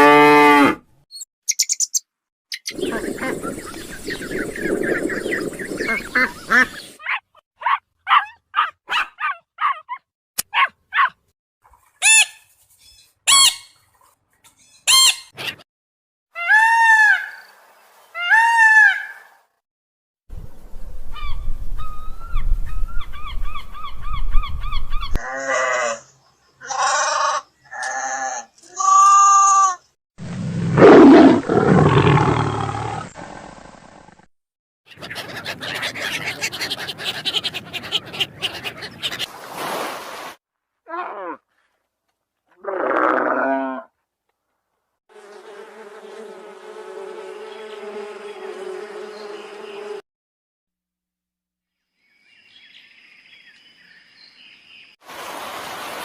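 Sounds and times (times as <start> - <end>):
pitched animal calls: 34.9 - 39.3
loud rough animal call: 42.6 - 43.9.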